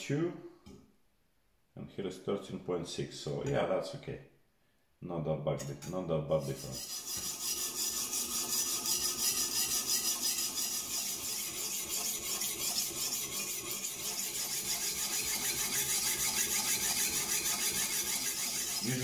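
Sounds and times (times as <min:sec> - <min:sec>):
diamond stone rasping on knife blade: 0:06.4 - 0:19.0.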